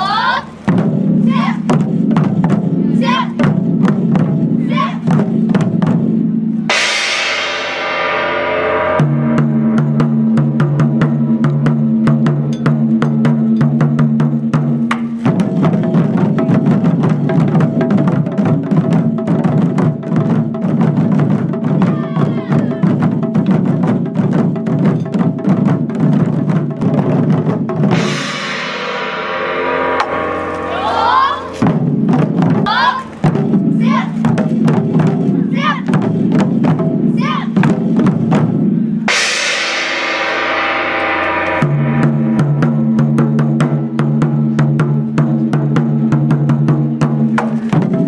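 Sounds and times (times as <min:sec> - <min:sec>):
taiko drums playing: 0:00.0 - 0:48.0
bright ringing crash: 0:28.4 - 0:31.7, 0:39.5 - 0:42.6.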